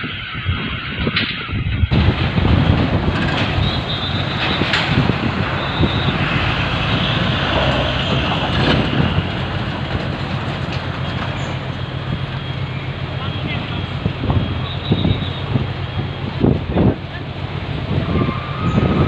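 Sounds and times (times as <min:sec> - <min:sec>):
ferry engines rumbling: 0:00.0 - 0:19.0.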